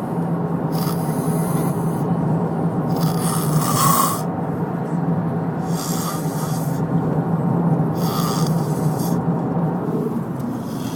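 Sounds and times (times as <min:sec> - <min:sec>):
steady low drone: 0:00.0 - 0:10.9
man snoring: 0:00.7 - 0:01.9, 0:02.9 - 0:04.3, 0:05.6 - 0:06.8, 0:08.0 - 0:09.2.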